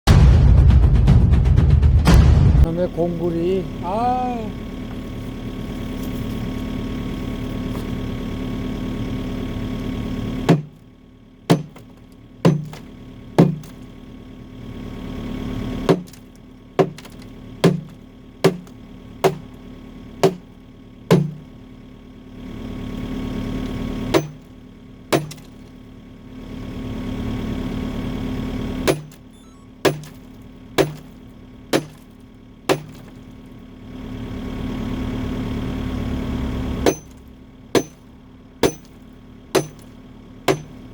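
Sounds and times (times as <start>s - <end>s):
diesel engine running: 0.1s - 40.9s
excavator bucket striking concrete: 10.5s - 10.8s, 11.5s - 13.8s, 15.9s - 19.6s, 20.2s - 20.5s, 21.1s - 21.5s, 24.1s - 25.8s, 28.9s - 33.3s, 36.8s - 40.9s.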